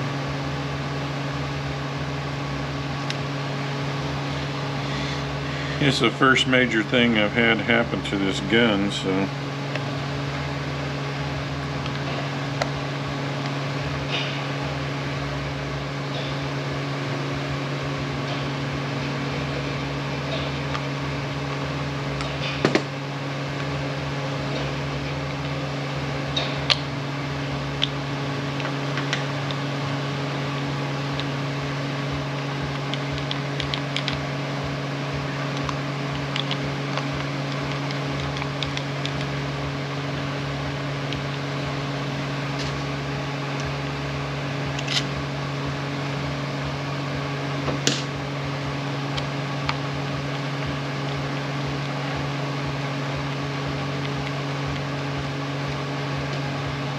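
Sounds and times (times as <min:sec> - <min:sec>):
fan-like mechanical hum: 0:00.0 - 0:56.9.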